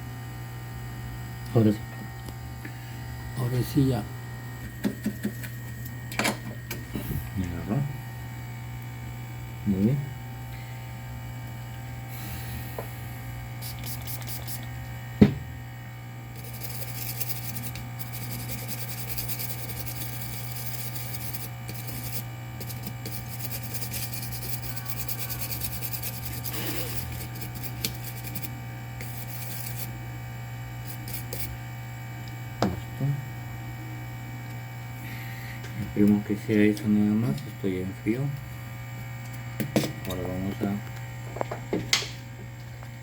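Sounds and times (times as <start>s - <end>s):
equipment low hum: 0.0s - 43.0s
brush scrubbing circuit board: 13.6s - 14.8s, 16.3s - 30.0s, 30.8s - 31.6s.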